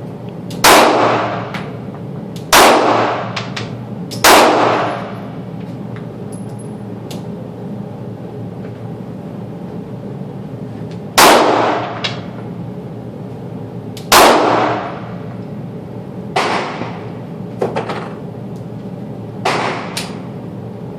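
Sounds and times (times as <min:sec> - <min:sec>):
pistol shots with echo: 0:00.6 - 0:01.5, 0:02.5 - 0:03.4, 0:04.2 - 0:05.1, 0:11.2 - 0:12.0, 0:14.1 - 0:15.0, 0:16.4 - 0:17.0, 0:19.5 - 0:20.0.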